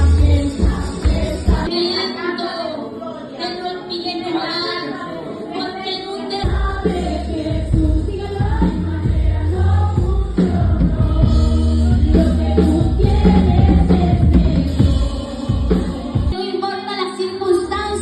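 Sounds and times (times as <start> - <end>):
bass and drums: 0.0 - 1.7, 6.4 - 16.4
voices singing with band: 0.0 - 18.0.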